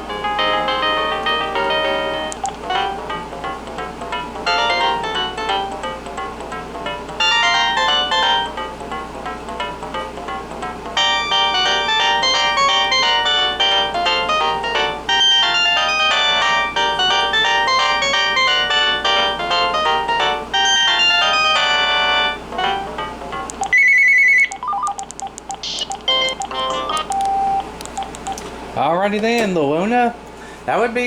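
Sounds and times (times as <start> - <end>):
phone melody ringtone: 0.1 - 28.4
clicks and short tones: 23.5 - 28.5.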